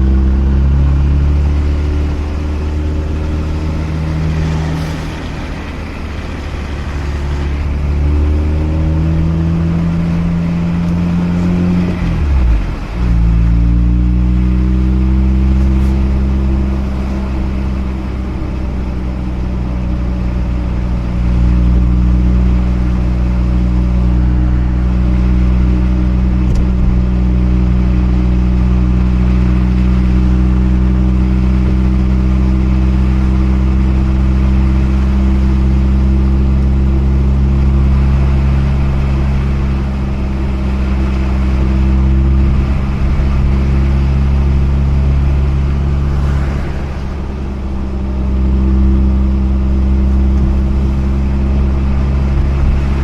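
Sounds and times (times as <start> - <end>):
rotary engine running: 33.5 - 53.0.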